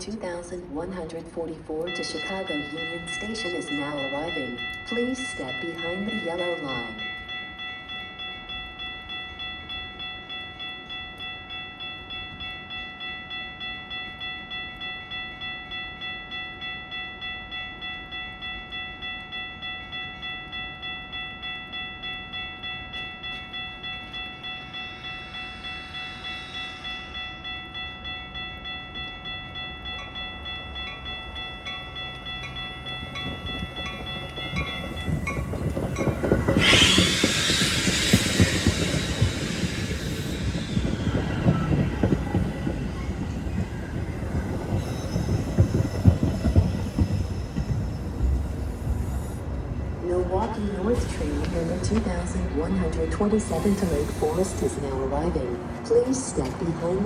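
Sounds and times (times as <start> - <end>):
crossing warning bell ringing: 0.0 - 57.0
train rumble: 17.8 - 57.0.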